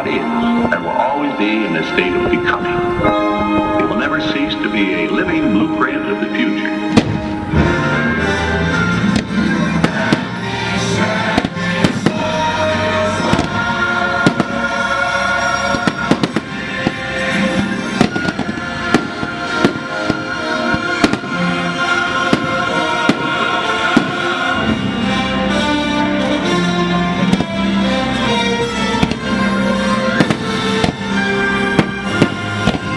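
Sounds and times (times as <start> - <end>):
music over loudspeakers: 0.0 - 32.9
firework bangs and cracks: 7.0 - 7.6, 9.1 - 10.5, 11.3 - 12.4, 13.2 - 14.7, 15.7 - 21.4, 22.2 - 24.6, 27.3 - 27.6, 29.0 - 32.9.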